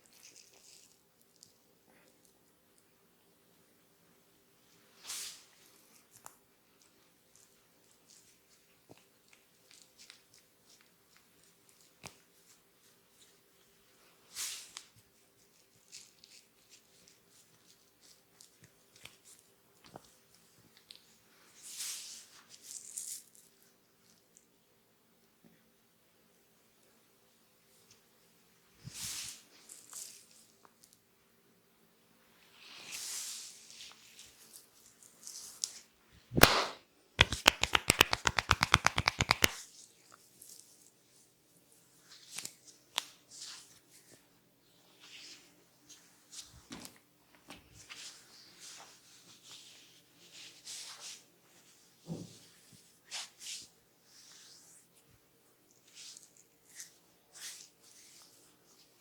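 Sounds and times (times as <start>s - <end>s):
head massage rustles and clicks: 32.8s - 41.2s, 41.9s - 44.2s, 44.9s - 59.0s
fast tapping strikes on body: 36.4s - 39.6s
hands slapping body: 36.4s - 39.6s
hands rustling on skin and hair: 36.4s - 40.9s, 55.8s - 59.0s.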